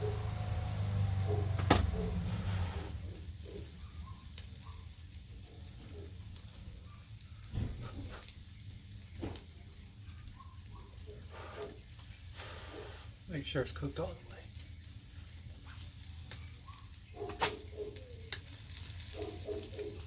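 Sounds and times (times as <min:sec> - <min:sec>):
meat sizzling on a grill: 0:00.0 - 0:20.0.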